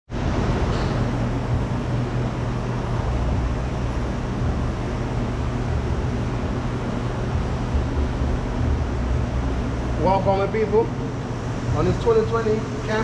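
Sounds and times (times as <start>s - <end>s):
constant rushing noise: 0.1s - 13.0s
steady low hum: 0.1s - 13.0s.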